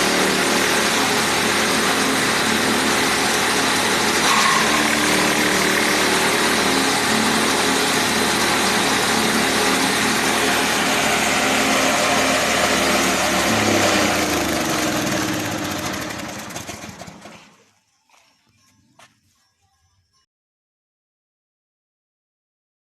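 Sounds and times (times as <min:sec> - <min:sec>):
grass chopper machine running: 0:00.0 - 0:17.7.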